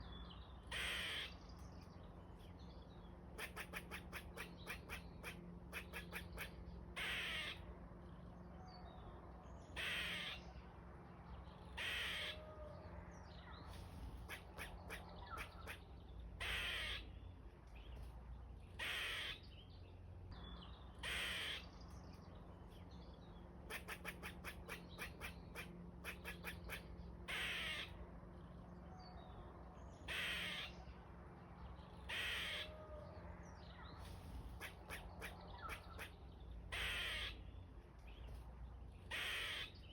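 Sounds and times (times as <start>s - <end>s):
squirrel raspy calls: 0.6s - 1.4s, 3.3s - 7.7s, 9.7s - 10.5s, 11.7s - 12.7s, 14.2s - 17.2s, 18.7s - 19.6s, 20.5s - 22.2s, 23.6s - 28.5s, 29.9s - 30.9s, 31.9s - 33.1s, 33.8s - 38.2s, 39.0s - 39.9s.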